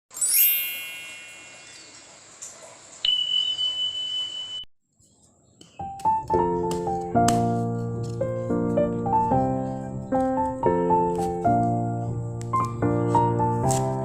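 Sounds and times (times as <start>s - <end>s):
piano music: 0.1s - 2.0s, 5.8s - 14.0s
bright chime: 0.1s - 2.2s, 3.0s - 4.7s.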